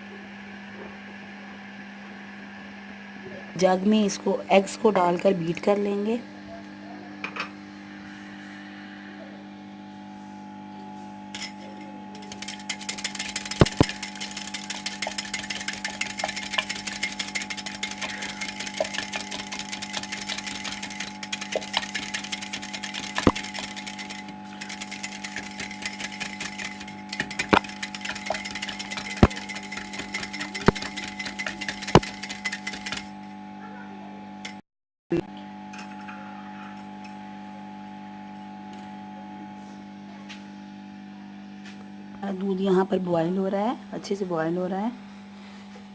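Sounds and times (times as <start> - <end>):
beater clattering in a jug: 12.2 - 33.1.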